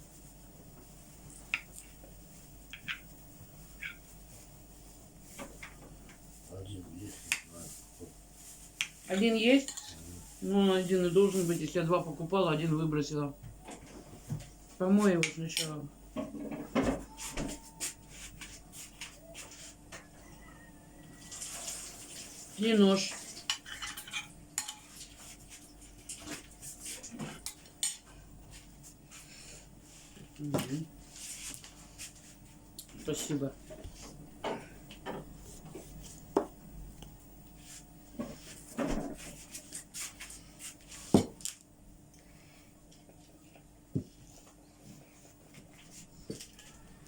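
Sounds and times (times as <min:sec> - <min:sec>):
dishes and utensils clattering: 0:09.6 - 0:10.0, 0:23.1 - 0:25.2.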